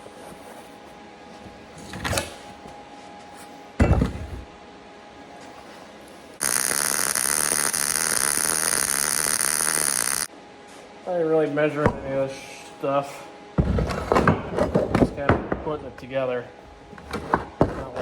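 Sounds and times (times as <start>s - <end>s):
welding arc crackling: 6.4s - 10.3s.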